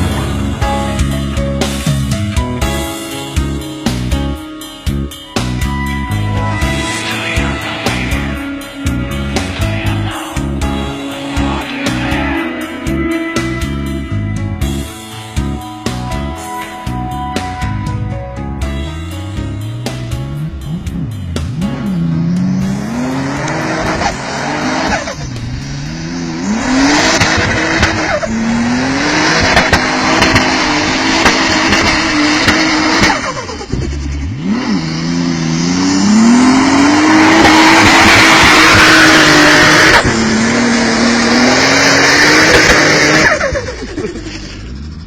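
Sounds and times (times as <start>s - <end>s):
loud rushing noise: 0.0s - 3.6s, 6.3s - 15.2s, 20.5s - 33.3s
vehicle engine revving: 0.0s - 4.2s, 6.0s - 16.1s, 18.8s - 45.0s.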